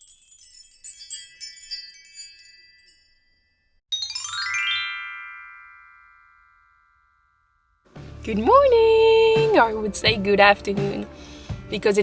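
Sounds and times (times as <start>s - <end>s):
twinkling chimes: 0.0s - 7.8s
rising run of bell tones: 0.0s - 7.9s.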